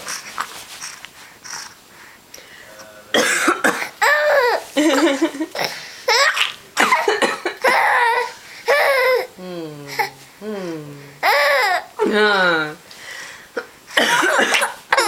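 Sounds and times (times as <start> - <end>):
adult coughing: 3.1 - 4.2, 4.8 - 8.1, 13.6 - 15.0
baby laughing: 4.0 - 9.3, 11.2 - 11.9.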